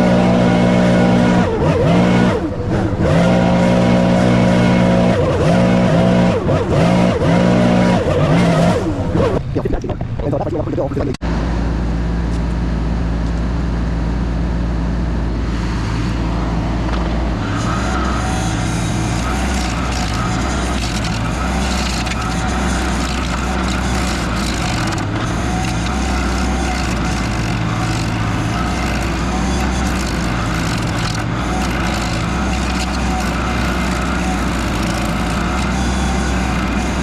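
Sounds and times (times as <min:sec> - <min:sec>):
stump grinder working: 0:00.0 - 0:10.8, 0:15.4 - 0:37.0
skid steer engine running hard: 0:00.0 - 0:37.0.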